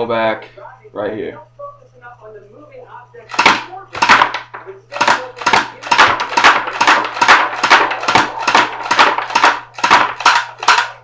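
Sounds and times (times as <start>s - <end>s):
airsoft pistol shots: 3.3s - 11.0s.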